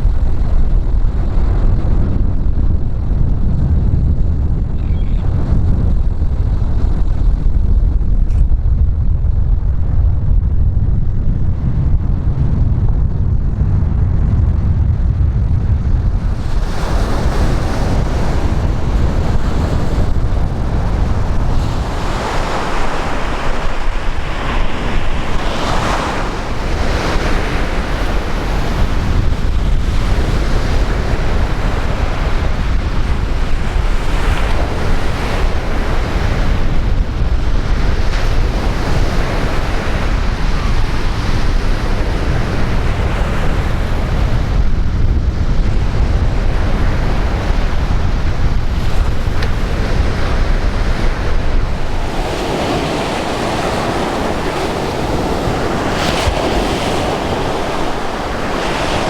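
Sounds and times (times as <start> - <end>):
wind buffeting microphone: 0.0 - 59.0
sea waves breaking: 16.2 - 59.0.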